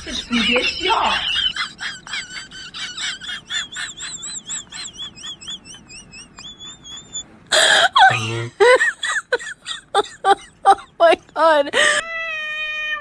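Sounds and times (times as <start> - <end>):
bird chirping and whistling: 4.2 - 7.2.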